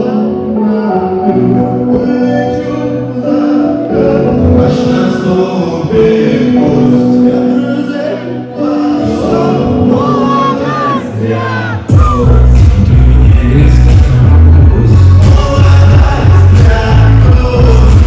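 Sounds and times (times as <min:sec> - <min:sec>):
voices singing sustained notes: 0:00.0 - 0:12.6
live band music: 0:09.0 - 0:18.0.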